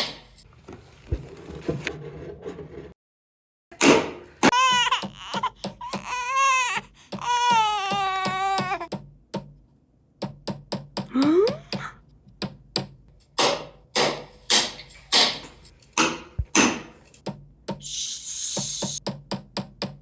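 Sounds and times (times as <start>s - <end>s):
child banging toys: 3.8s - 9.6s, 10.2s - 17.9s, 18.6s - 20.0s.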